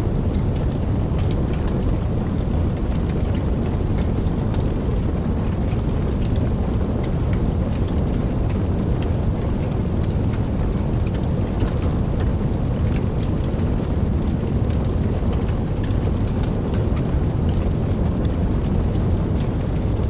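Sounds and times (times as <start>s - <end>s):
fire crackling and popping: 0.0s - 20.0s
low rush of flame: 0.0s - 20.0s.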